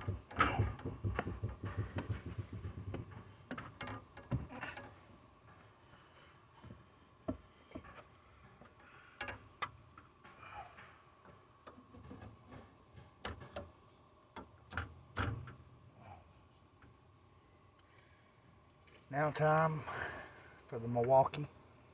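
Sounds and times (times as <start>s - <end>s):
clicks of pipe fittings and tools: 0.0s - 5.0s, 6.6s - 10.4s, 11.2s - 15.6s.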